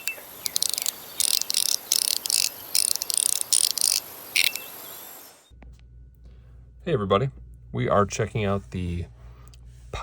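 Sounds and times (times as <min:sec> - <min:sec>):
fidget toy plastic clicks: 0:00.0 - 0:04.6.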